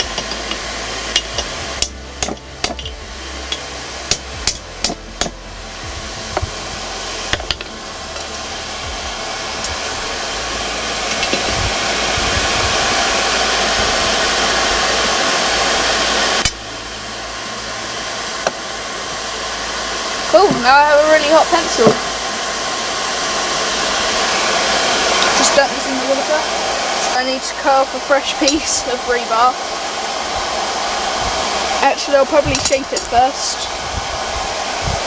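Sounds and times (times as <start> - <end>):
hammer striking steel on anvil: 0.0 - 5.4.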